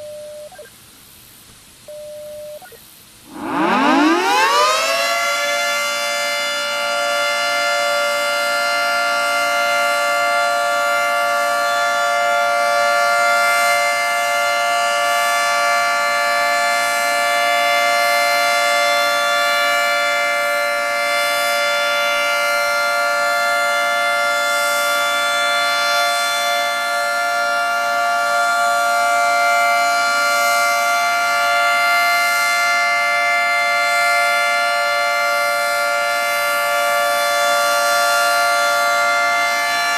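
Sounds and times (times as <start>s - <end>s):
two-tone tornado siren: 2.4s - 39.9s.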